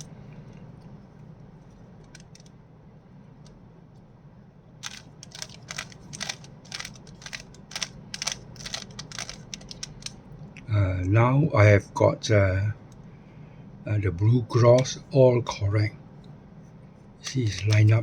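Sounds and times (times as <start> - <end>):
low steady hum: 0.0 - 18.0
puzzle cube clicking and rattling: 4.8 - 10.2, 17.2 - 18.0.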